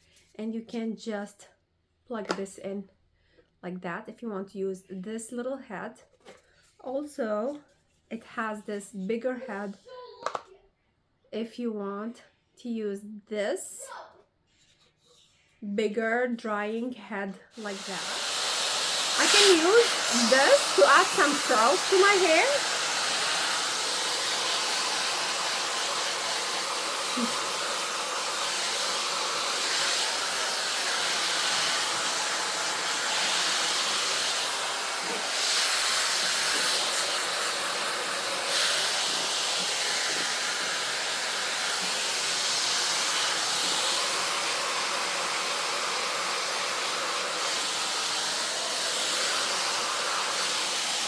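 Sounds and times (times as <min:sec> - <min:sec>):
hair dryer blowing air: 0:17.5 - 0:51.0.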